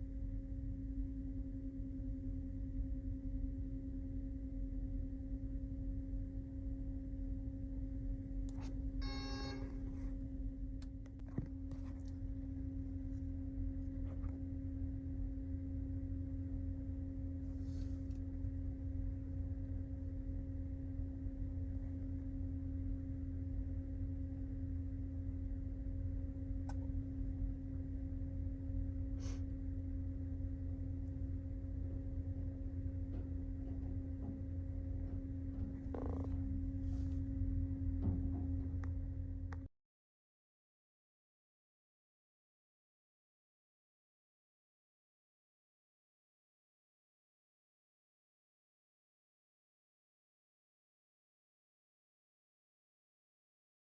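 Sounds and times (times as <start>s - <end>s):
brief ringing chime: 9.0s - 9.7s.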